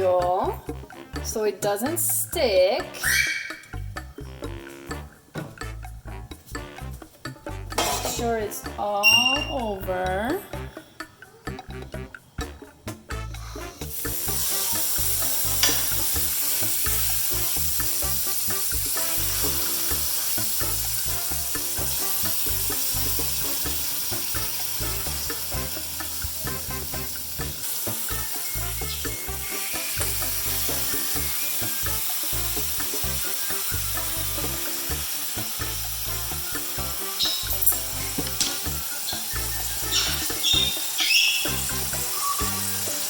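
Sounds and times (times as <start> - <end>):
steak sizzling in oil: 13.6 - 43.0.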